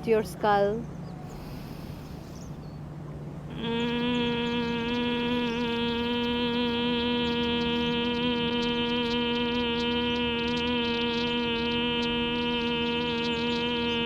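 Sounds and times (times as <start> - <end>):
person humming nasally: 3.5 - 14.0.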